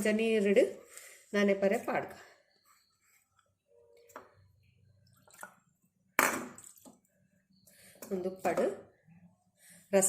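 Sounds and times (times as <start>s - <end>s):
water drips and splashes: 5.0s - 5.8s.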